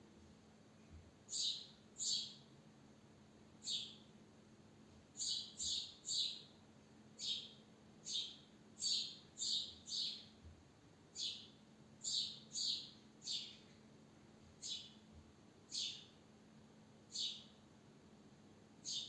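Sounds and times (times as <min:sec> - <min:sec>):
sparrow chirping: 0:01.3 - 0:02.4, 0:03.6 - 0:04.0, 0:05.2 - 0:06.5, 0:07.2 - 0:10.3, 0:11.2 - 0:13.8, 0:14.6 - 0:15.0, 0:15.7 - 0:16.2, 0:17.1 - 0:17.6.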